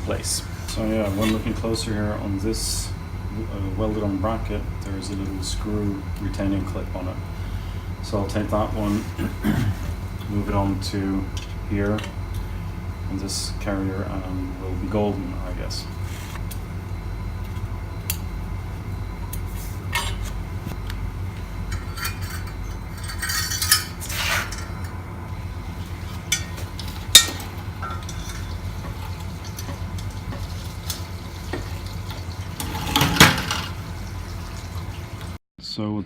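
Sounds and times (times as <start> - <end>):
steady low hum: 0.0 - 35.4
metallic clicks and scrapes: 21.7 - 25.0.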